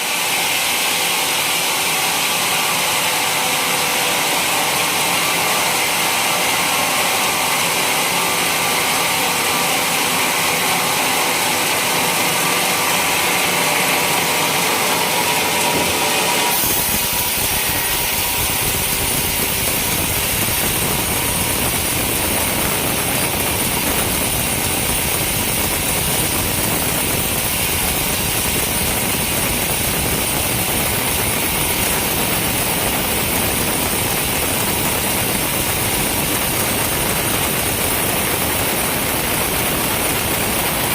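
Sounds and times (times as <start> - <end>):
sawmill sawing through trunk: 1.8 - 40.9.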